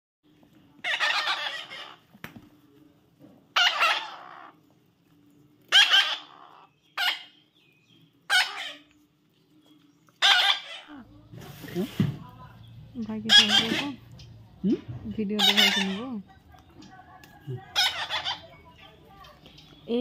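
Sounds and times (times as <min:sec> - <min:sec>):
parrot squawking: 0:00.8 - 0:02.1, 0:03.5 - 0:04.6, 0:05.7 - 0:07.4, 0:08.3 - 0:08.9, 0:10.2 - 0:11.1, 0:13.1 - 0:14.2, 0:15.2 - 0:16.4, 0:17.6 - 0:19.0.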